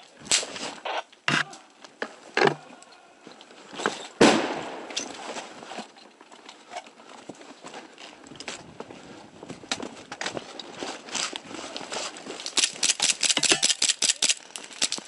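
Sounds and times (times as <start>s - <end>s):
twigs crunching and cracking: 9.4s - 15.0s.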